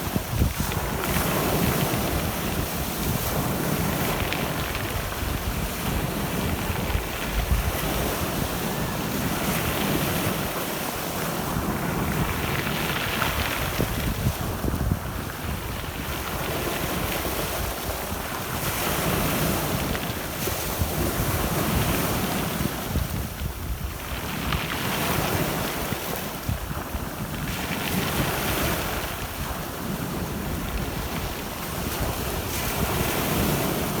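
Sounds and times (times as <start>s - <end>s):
surf breaking on shore: 0.0s - 34.0s
wind gusting on microphone: 0.0s - 34.0s.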